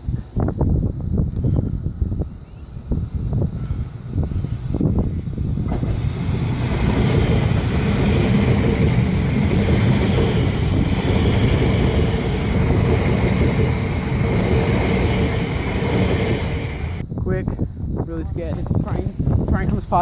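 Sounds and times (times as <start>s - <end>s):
road noise: 4.0s - 17.0s
car engine running: 5.6s - 17.0s.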